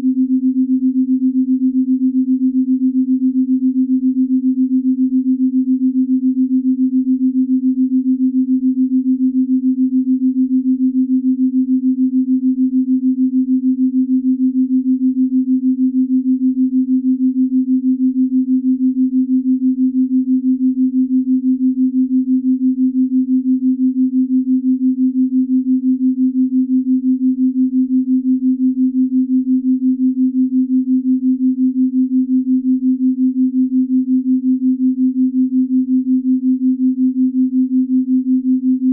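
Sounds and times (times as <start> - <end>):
pulsing low tone: 23.7 - 38.9.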